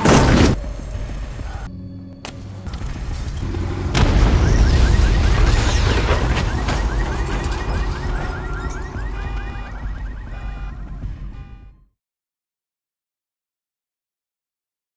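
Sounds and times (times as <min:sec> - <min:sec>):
car alarm chirping: 0:04.0 - 0:11.8.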